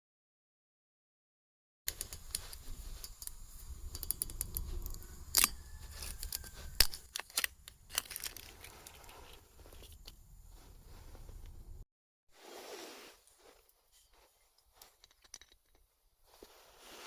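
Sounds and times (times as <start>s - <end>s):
sharp clicks: 1.9s - 8.7s
crinkling and tearing: 1.9s - 11.6s.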